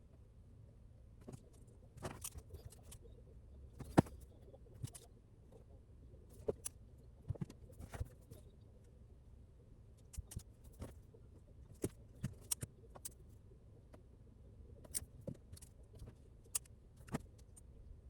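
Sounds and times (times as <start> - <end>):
low steady hum: 0.0 - 18.0
small sharp clicks and ticks: 10.0 - 11.0, 14.8 - 17.7.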